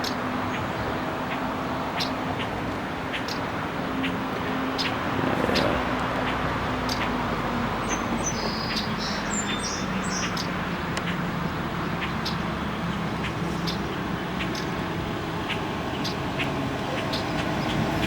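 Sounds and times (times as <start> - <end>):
traffic noise: 0.0 - 18.0
vehicle engine hum: 0.0 - 18.0
bird chirping: 7.8 - 10.6.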